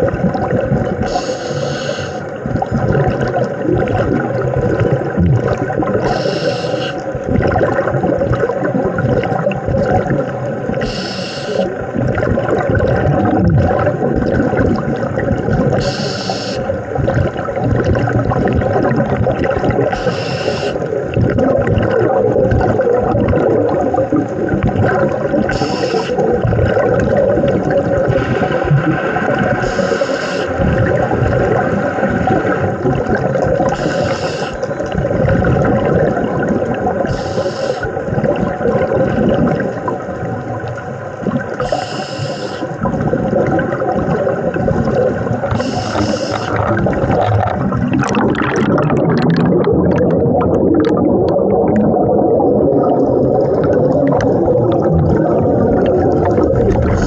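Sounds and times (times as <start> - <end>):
exhaled bubbles rushing: 0.0 - 57.0
diver breathing through regulator: 1.0 - 2.3, 6.0 - 7.1, 10.8 - 11.8, 15.8 - 16.8, 19.9 - 20.9, 25.5 - 26.4, 28.2 - 30.8, 33.6 - 34.8, 37.0 - 38.0, 41.6 - 42.8, 45.5 - 46.8.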